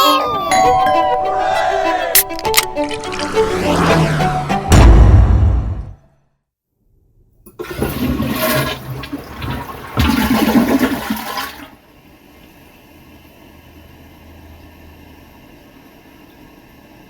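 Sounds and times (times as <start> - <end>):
toilet flushing: 7.5 - 13.2.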